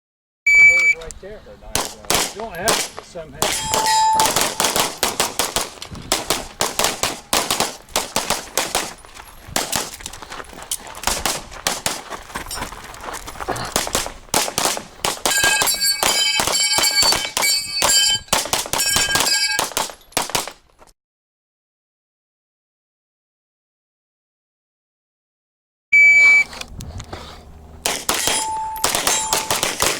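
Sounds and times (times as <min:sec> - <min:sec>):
pistol shots: 0:01.7 - 0:09.0, 0:09.6 - 0:10.0, 0:11.0 - 0:12.0, 0:13.7 - 0:20.6, 0:27.8 - 0:29.9
steel targets ringing: 0:03.4 - 0:05.2, 0:15.3 - 0:19.8, 0:28.2 - 0:29.8.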